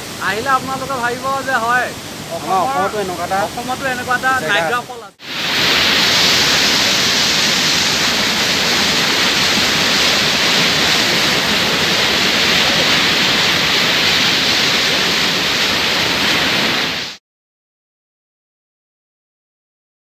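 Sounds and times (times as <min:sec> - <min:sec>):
waterfall rushing: 0:00.0 - 0:17.2.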